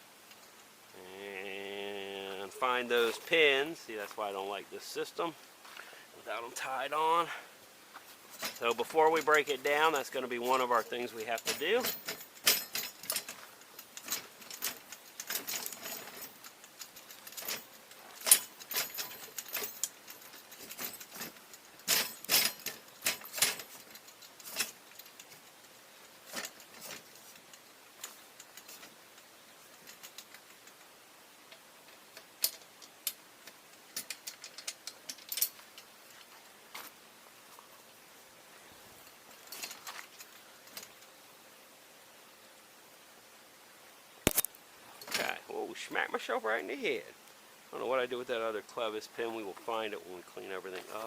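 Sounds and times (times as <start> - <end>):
metal parts clinking and rattling: 8.2 - 37.0, 39.0 - 41.1, 44.3 - 45.4.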